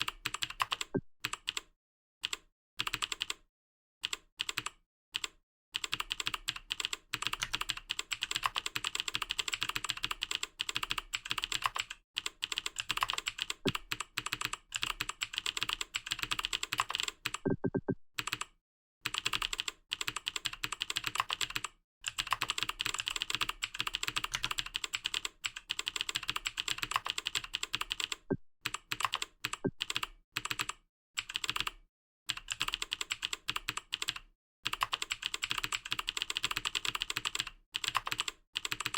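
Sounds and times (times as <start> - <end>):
fast typing on keyboard: 0.0 - 1.6, 2.2 - 3.4, 4.0 - 38.9.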